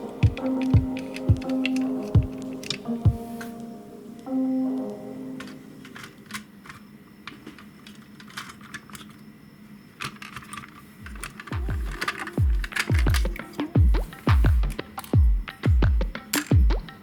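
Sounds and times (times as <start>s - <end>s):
small parts clicking and tapping: 0.0s - 2.9s, 5.4s - 9.3s, 9.9s - 17.0s
electronic music with bass thumps: 0.2s - 2.4s, 11.1s - 17.0s.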